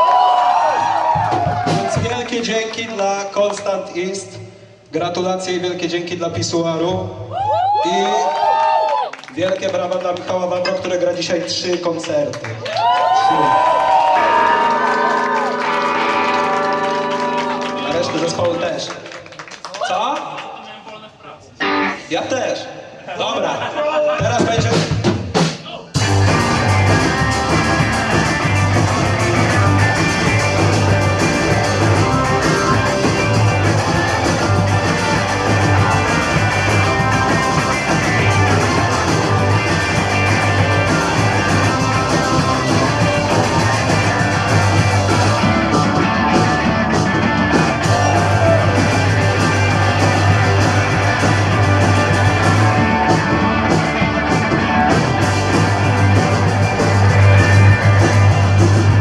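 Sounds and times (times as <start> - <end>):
punk rock band playing live: 0.8 - 2.1, 14.0 - 18.5, 21.6 - 22.0, 24.2 - 59.0.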